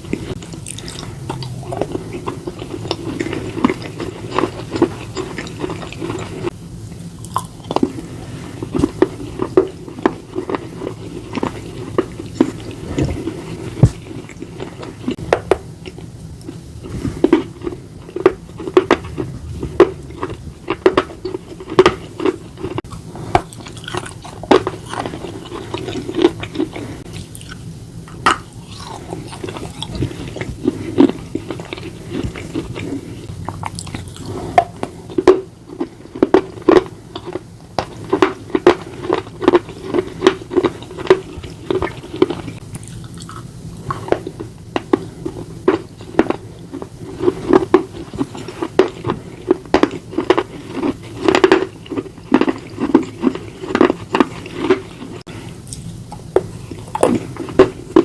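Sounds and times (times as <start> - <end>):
person chewing: 0.0 - 58.0
biting crunches: 17.2 - 27.6, 28.2 - 58.0.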